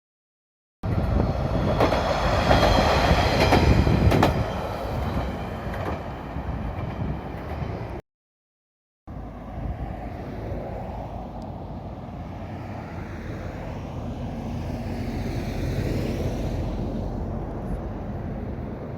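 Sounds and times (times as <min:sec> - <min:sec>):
diesel railcar rumbling: 0:00.8 - 0:08.0, 0:09.1 - 0:18.9
wheels clacking over rail joints: 0:01.0 - 0:07.8.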